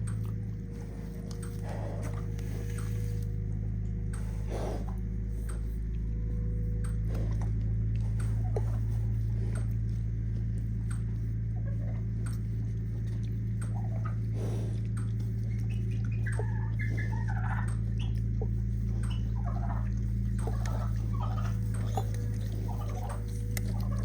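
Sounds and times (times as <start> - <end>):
steady low hum: 0.0 - 24.0
piglets squeaking: 13.6 - 14.3, 15.4 - 24.0.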